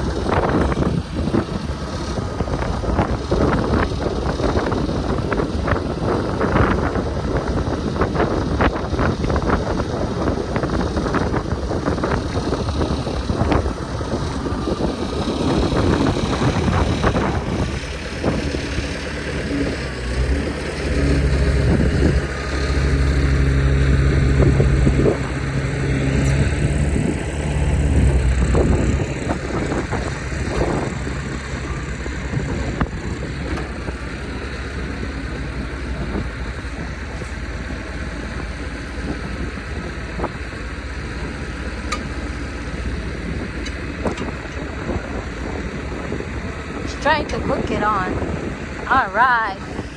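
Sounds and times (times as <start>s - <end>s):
tractor engine running: 0.0s - 49.9s.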